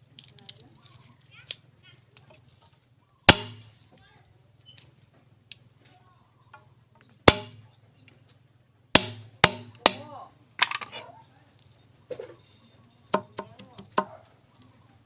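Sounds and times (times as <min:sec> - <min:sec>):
sharp loud knocks with ringing: 0:03.3 - 0:03.7, 0:07.3 - 0:07.6, 0:09.0 - 0:10.1.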